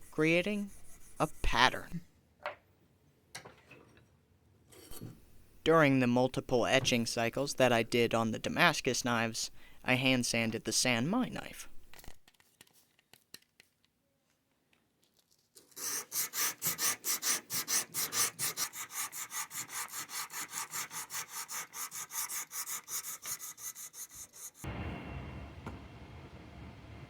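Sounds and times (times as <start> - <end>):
sandpaper rubbing on steel blade: 15.7 - 24.6.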